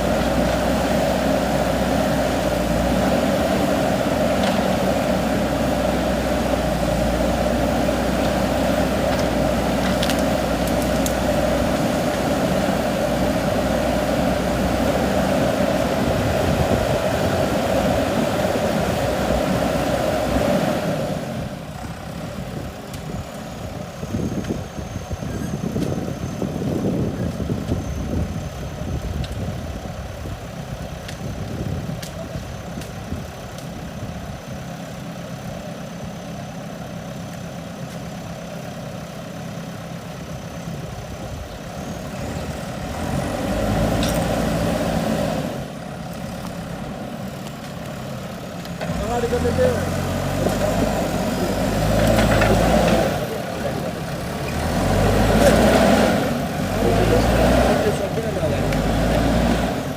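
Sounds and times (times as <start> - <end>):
diesel engine running: 0.0 - 59.9.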